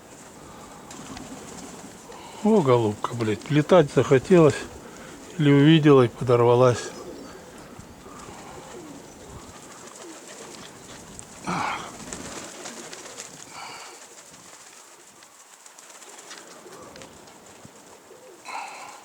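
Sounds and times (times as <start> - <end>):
pigeons cooing: 0.0 - 15.2, 15.8 - 19.0
wind rumbling on microphone: 6.9 - 9.9.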